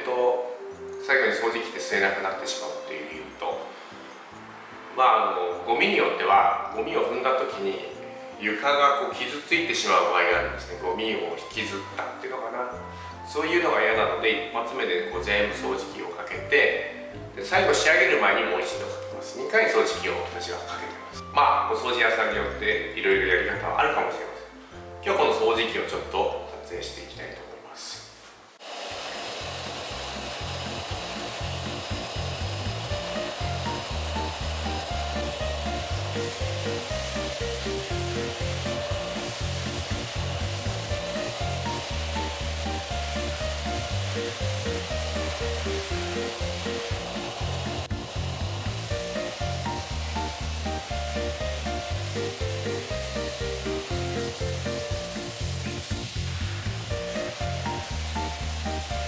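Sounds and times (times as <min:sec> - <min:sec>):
vacuum cleaner running: 0:28.6 - 0:59.0
background music with bass line: 0:29.4 - 0:59.0.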